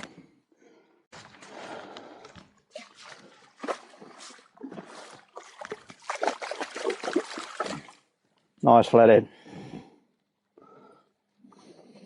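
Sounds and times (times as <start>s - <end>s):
fish splashing in shallow water: 2.7s - 8.1s.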